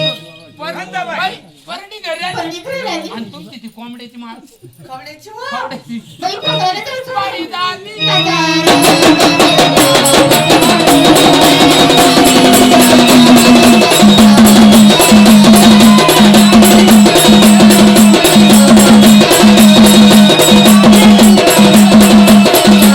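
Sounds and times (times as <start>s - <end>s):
fast steady drumming: 8.2s - 22.9s.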